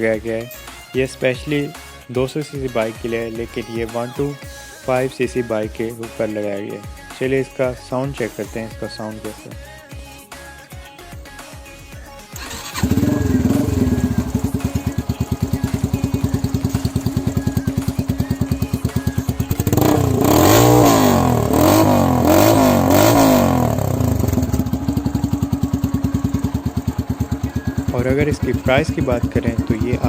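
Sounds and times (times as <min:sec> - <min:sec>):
motorcycle engine idling and revving: 0:12.4 - 0:30.0.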